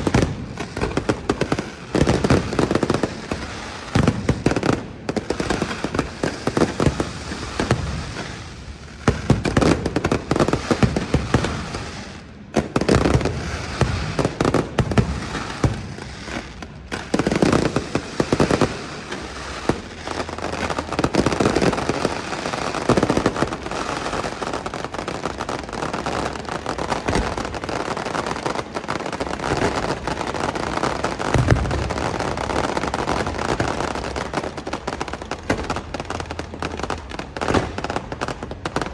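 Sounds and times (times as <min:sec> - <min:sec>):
fireworks crackling: 0:00.0 - 0:38.9
fireworks shells booming: 0:00.0 - 0:38.9.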